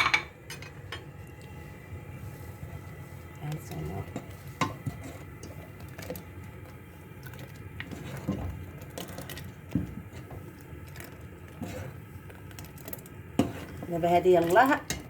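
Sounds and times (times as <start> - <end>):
utensils knocking against pot: 0.0 - 1.0
low steady hum: 0.0 - 15.0.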